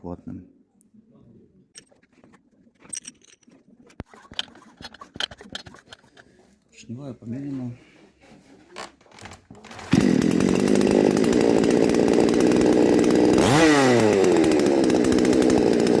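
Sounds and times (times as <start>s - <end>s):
chainsaw engine idling and revving: 9.2s - 16.0s.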